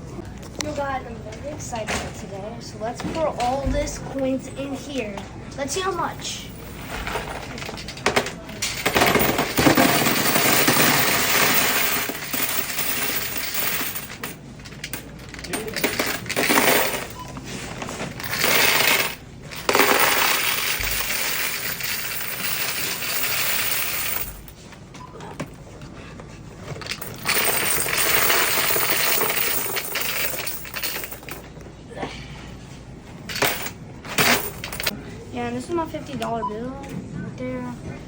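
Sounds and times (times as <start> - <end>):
coins clattering into machine: 6.4 - 17.3, 18.1 - 24.6, 26.8 - 31.5, 33.3 - 34.9.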